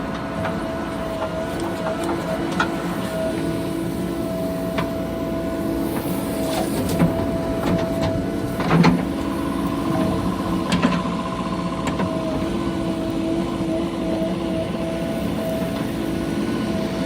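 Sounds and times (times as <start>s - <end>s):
diesel engine running: 0.0s - 17.0s.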